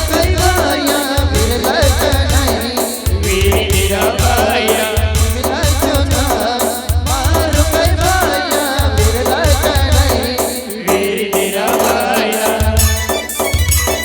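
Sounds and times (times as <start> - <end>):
driving drum beat: 0.0 - 14.0
ornamented lead melody: 12.8 - 14.0.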